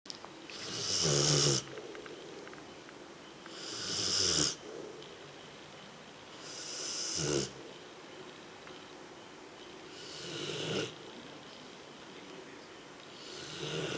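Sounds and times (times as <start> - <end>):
dog snoring: 0.5 - 1.7, 3.5 - 4.9, 6.4 - 7.6, 9.9 - 11.2, 13.1 - 13.9.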